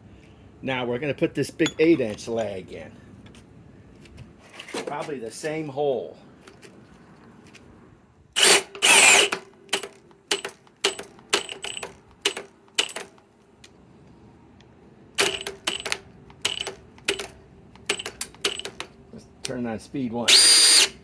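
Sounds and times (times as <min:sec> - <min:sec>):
cordless drill driving screw: 0:08.4 - 0:09.4, 0:20.3 - 0:21.0.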